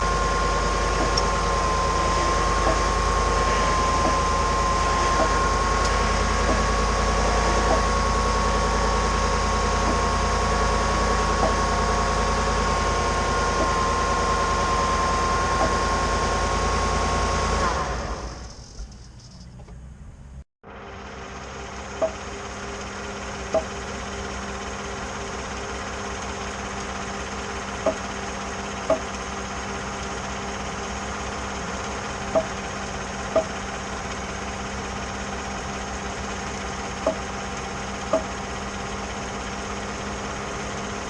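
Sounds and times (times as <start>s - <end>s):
high whine: 0.0s - 19.7s
truck engine idling: 0.0s - 41.0s
faint steering pops: 5.1s - 8.0s.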